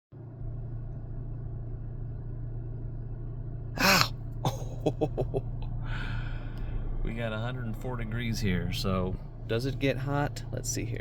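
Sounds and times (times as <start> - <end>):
car cabin hum: 0.2 - 11.0
person coughing or gasping: 3.8 - 4.8.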